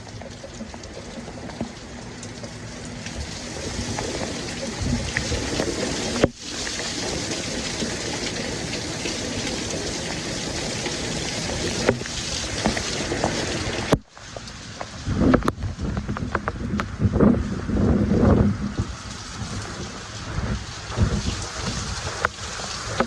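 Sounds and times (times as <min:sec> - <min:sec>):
heavy rain falling: 0:00.0 - 0:23.0
wind buffeting microphone: 0:02.9 - 0:09.6, 0:14.9 - 0:23.0.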